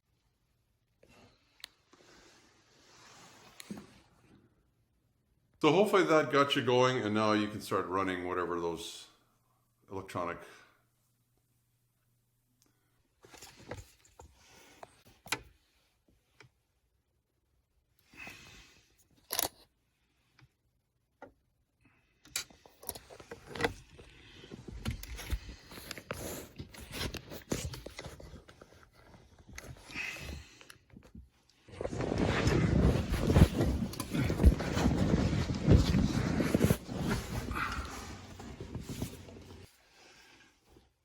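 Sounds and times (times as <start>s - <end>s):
clicks and scraping: 19.2s - 19.7s, 22.2s - 39.7s
rustling handling noises: 22.4s - 40.9s.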